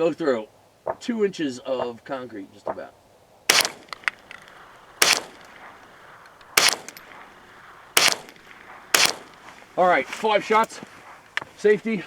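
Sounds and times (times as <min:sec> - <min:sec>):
rifle gunshots: 0:03.5 - 0:09.5.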